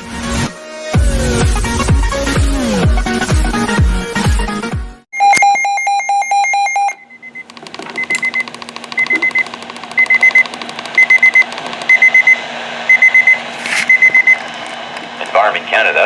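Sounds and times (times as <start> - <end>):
quick high beeps: 5.2 - 7.4, 10.0 - 14.4.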